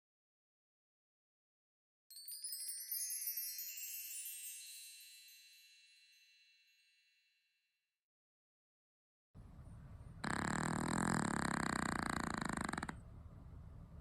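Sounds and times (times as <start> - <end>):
high tinkling chime tones: 2.1 - 7.4.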